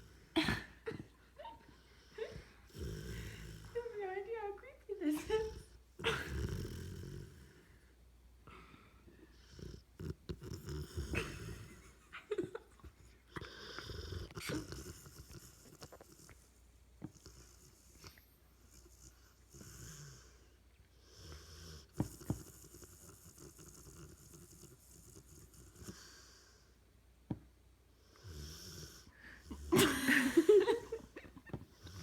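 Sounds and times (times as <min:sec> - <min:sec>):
dog snoring: 0:02.6 - 0:04.0, 0:05.2 - 0:07.8, 0:09.3 - 0:11.9, 0:13.3 - 0:26.6, 0:28.0 - 0:29.9, 0:31.8 - 0:32.0.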